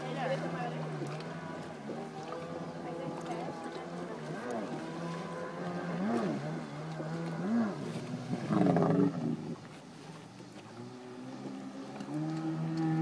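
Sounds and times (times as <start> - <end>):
jet ski engine revving: 0.0 - 13.0.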